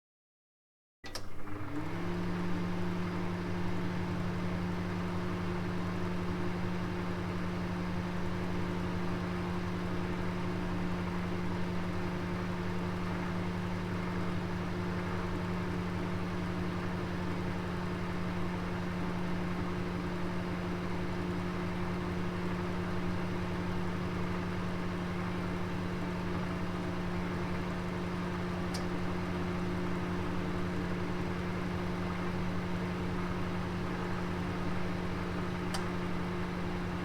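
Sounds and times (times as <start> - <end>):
oven electric hum: 1.1 - 37.0
oven rushing noise: 34.2 - 37.0.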